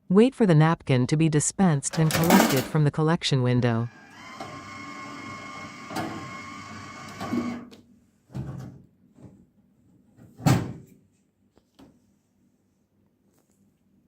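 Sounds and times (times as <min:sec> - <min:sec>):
vending machine motor whirring: 0:03.9 - 0:07.7.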